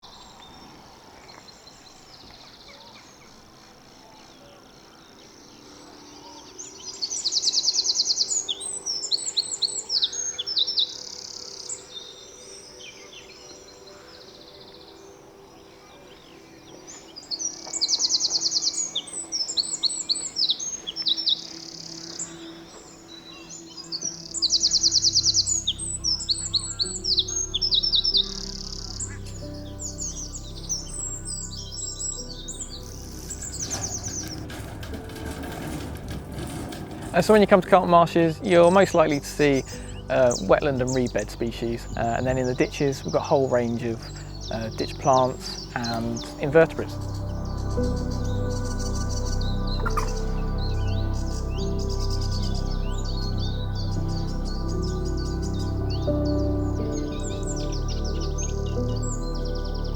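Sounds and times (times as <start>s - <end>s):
songbird trilling and chattering: 0.0s - 34.4s, 37.2s - 59.4s
soft music: 0.0s - 59.9s
low bass: 24.6s - 59.9s.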